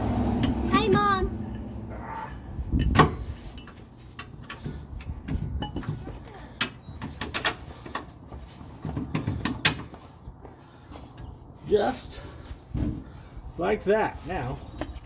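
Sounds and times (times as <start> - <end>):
metal parts clinking and knocking: 2.8 - 8.1.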